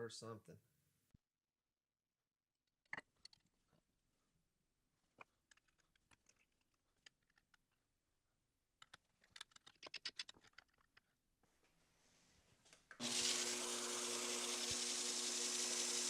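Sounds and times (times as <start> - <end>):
small hard objects clicking: 8.8 - 11.1.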